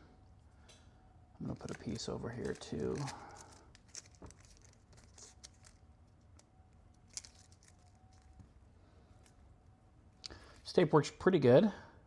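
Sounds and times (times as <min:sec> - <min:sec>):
tape rustling: 0:01.4 - 0:08.6.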